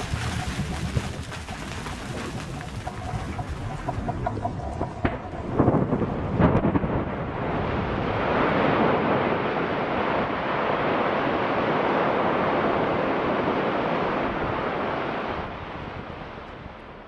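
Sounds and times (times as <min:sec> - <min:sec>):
rock debris cascading roar: 0:00.0 - 0:10.8.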